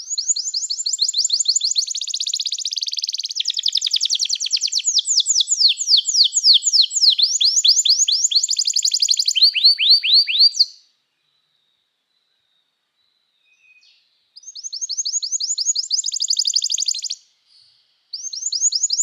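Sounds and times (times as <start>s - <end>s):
canary singing trills: 0.0s - 10.8s, 13.7s - 17.2s, 18.1s - 19.0s.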